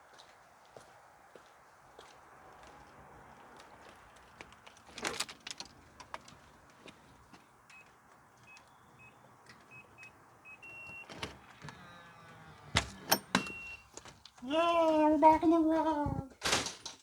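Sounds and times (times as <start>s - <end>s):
clicks and knocks of handling: 4.2s - 8.7s
short electronic beeps: 8.5s - 11.2s, 13.3s - 13.9s.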